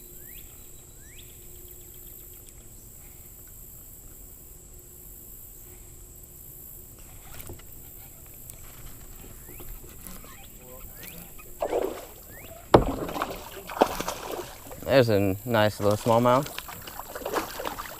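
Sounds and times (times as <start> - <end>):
water wash: 10.5 - 17.9
small knocks: 12.6 - 14.9.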